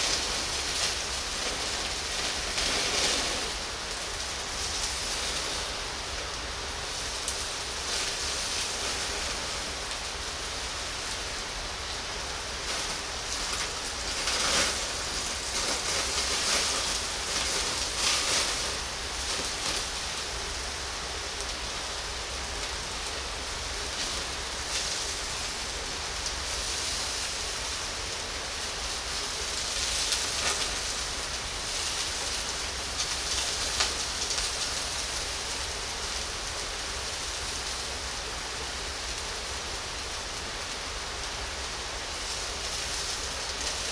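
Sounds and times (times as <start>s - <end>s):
fat crackling and popping: 0.0s - 20.7s, 28.9s - 34.8s
meat sizzling on a grill: 0.0s - 43.9s.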